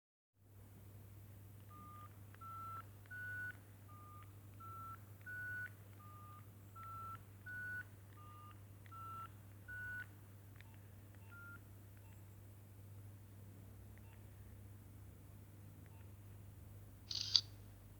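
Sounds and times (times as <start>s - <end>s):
beeping phone ringtone: 17.1s - 17.4s.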